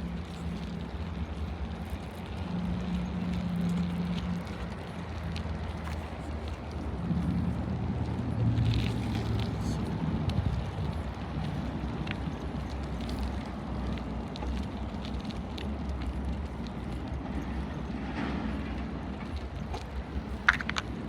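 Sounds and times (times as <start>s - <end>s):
bicycle tyres rumbling: 0.0s - 21.0s
bike clicks and rattles: 0.1s - 21.0s
wind on microphone: 6.8s - 14.2s.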